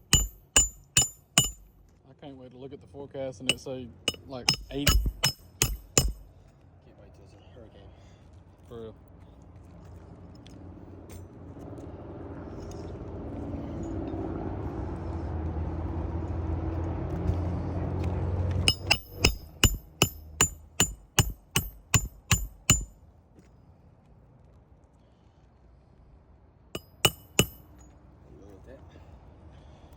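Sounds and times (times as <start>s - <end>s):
sharp metallic strikes ringing: 0.0s - 1.7s, 3.5s - 6.2s, 18.7s - 22.9s, 26.8s - 27.8s.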